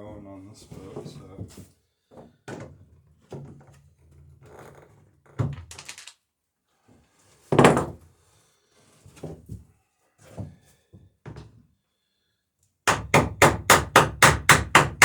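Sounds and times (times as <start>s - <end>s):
hammer knocking on rivets: 12.9s - 15.0s.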